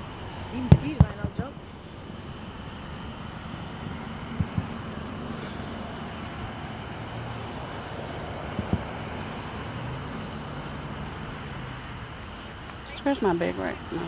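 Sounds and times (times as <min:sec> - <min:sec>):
idling cars and traffic: 0:00.0 - 0:14.0
dull firework booms: 0:00.6 - 0:09.9.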